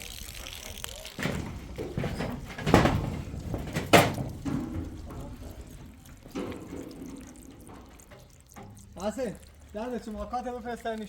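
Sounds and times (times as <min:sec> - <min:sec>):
sharp knocks: 0:01.2 - 0:08.8.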